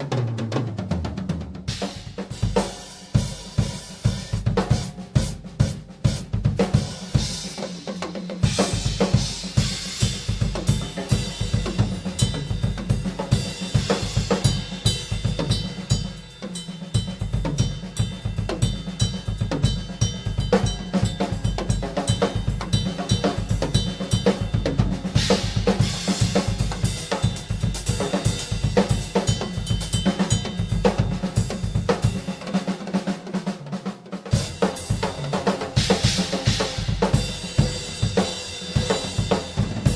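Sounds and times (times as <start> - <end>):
snare drum: 0.0 - 16.0, 21.2 - 39.9
cymbals: 1.7 - 33.4, 34.3 - 39.9
bass drum: 8.4 - 16.1, 17.0 - 32.3.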